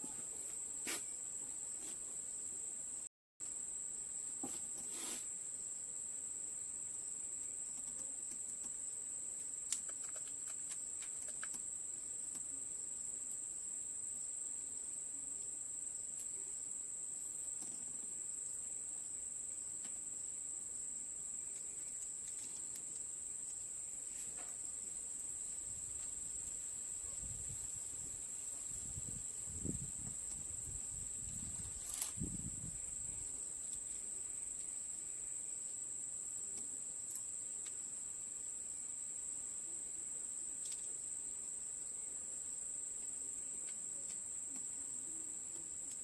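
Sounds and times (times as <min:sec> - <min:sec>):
insects droning: 0:00.0 - 0:46.0.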